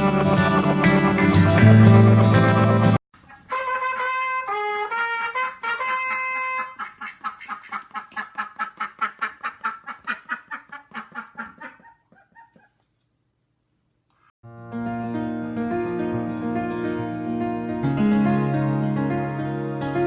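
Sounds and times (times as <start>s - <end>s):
trumpet-like melody: 0.0s - 6.8s.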